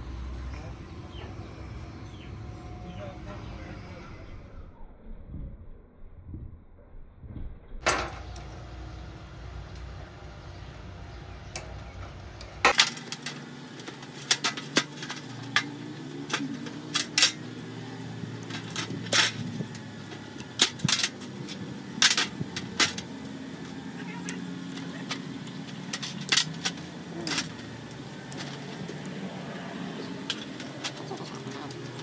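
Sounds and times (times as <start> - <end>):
metal tools clinking and knocking: 7.8 - 9.0, 9.8 - 32.0
steady machine hum: 7.8 - 32.0.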